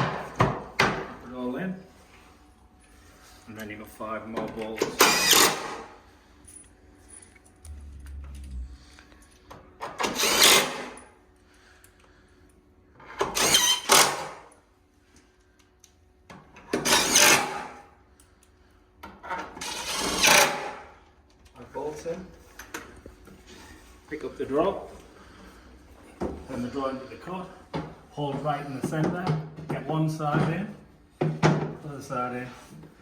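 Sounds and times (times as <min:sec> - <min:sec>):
power drill driving bolts: 0:04.8 - 0:05.9, 0:09.8 - 0:11.0, 0:13.2 - 0:14.4, 0:16.7 - 0:17.8, 0:19.6 - 0:20.8.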